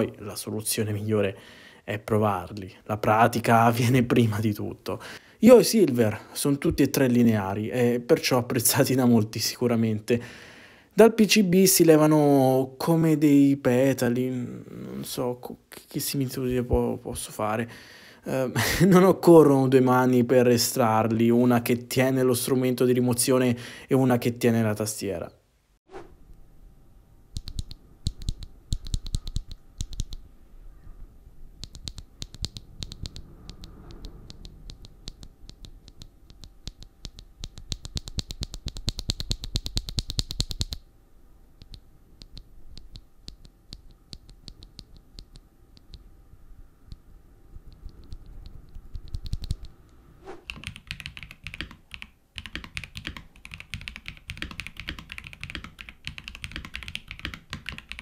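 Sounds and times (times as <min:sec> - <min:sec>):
mechanical keyboard typing: 0:27.4 - 0:30.3, 0:31.6 - 0:40.8, 0:41.6 - 0:46.0, 0:47.7 - 0:49.8, 0:50.5 - 0:58.0.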